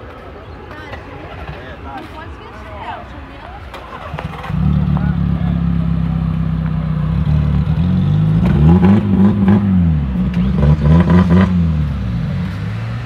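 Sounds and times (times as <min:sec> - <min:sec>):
car engine idling and revving: 0:03.8 - 0:13.0.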